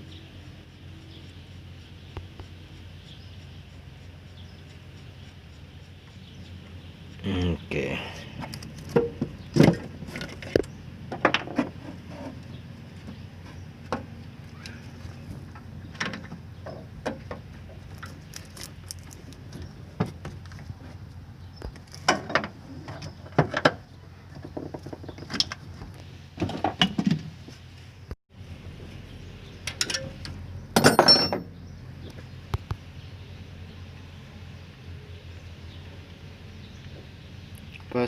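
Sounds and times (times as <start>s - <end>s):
hand tools clinking on metal: 30.8s - 31.5s.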